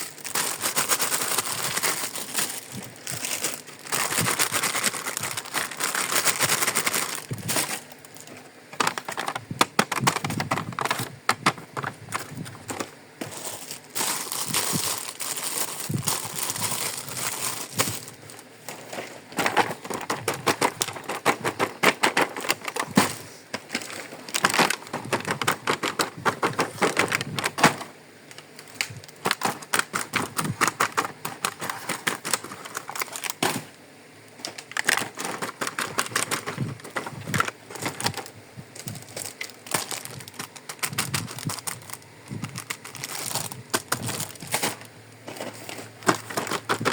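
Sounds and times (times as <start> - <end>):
plastic packaging crinkling: 0.0 - 46.9
plastic pieces clicking and tapping: 8.7 - 12.9, 19.4 - 27.7, 28.3 - 33.6, 34.4 - 44.8, 46.0 - 46.9.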